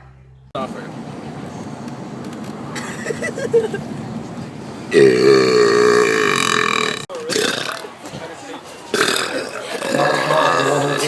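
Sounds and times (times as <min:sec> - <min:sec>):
person burping: 0:04.9 - 0:07.9, 0:08.9 - 0:11.0.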